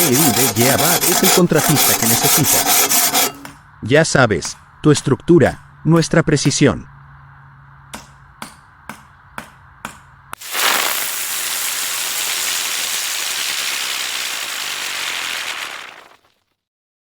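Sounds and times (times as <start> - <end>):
loud steady hiss: 10.4 - 16.3.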